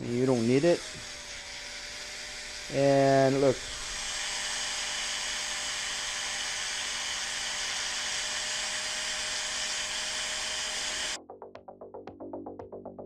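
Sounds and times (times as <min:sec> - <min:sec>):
power tool grinding whine: 0:00.0 - 0:11.2
electronic music with a beat: 0:11.2 - 0:13.0.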